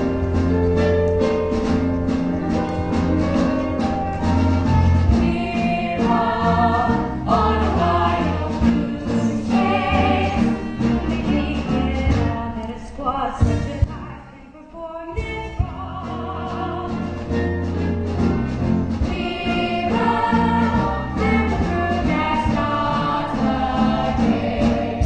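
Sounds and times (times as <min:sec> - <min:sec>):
voices singing over accompaniment: 0:05.1 - 0:12.3, 0:19.0 - 0:25.0.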